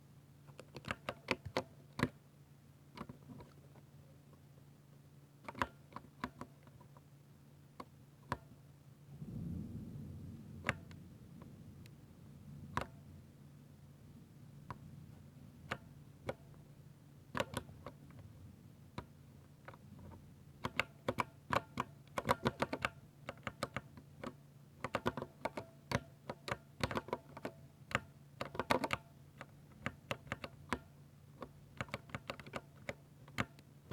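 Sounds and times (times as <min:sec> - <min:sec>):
mechanical keyboard typing: 0:00.5 - 0:02.2, 0:05.4 - 0:06.9, 0:17.3 - 0:18.2, 0:19.0 - 0:33.9.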